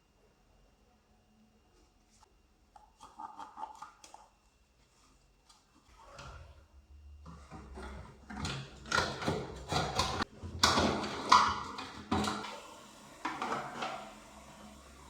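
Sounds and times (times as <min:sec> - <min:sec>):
plastic parts knocking and clicking: 0:07.6 - 0:12.5.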